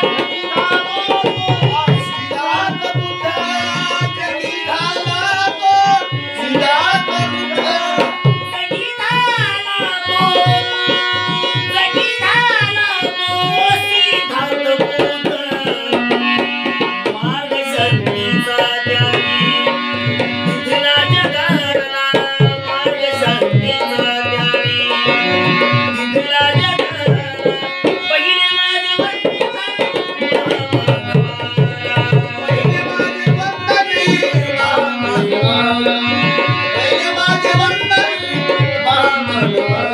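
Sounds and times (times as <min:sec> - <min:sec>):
tabla steady beat: 0:00.0 - 0:39.9.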